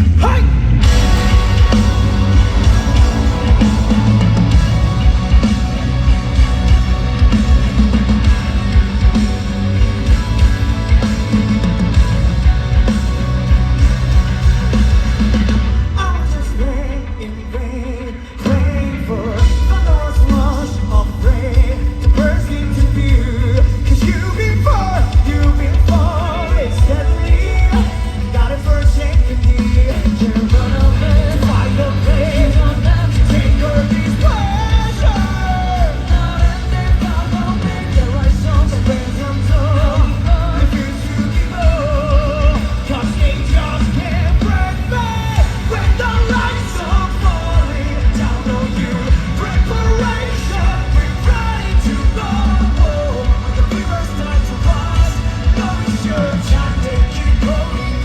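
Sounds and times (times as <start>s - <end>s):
rock band playing: 0.0s - 58.0s
man singing: 15.9s - 58.0s.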